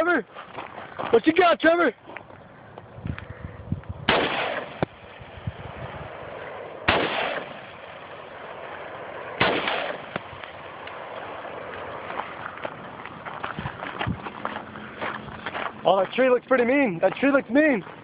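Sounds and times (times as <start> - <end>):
rifle shots with echo: 4.1 - 12.1.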